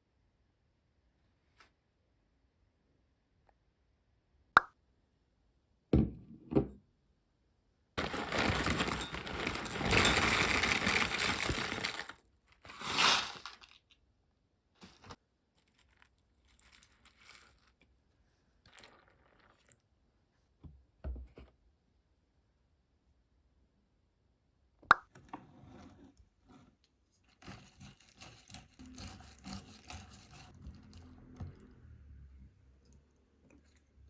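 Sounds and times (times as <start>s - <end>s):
loud rustling or crinkling: 8.0s - 13.8s.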